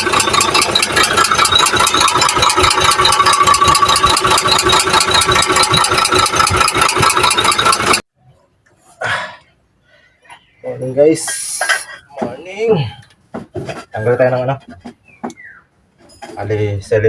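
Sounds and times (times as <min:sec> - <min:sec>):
engine knocking: 0:00.0 - 0:08.0.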